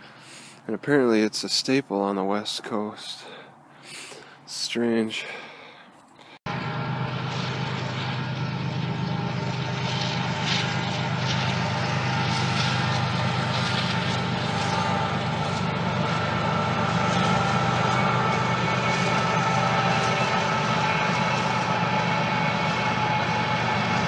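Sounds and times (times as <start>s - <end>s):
large engine droning: 5.1s - 24.0s.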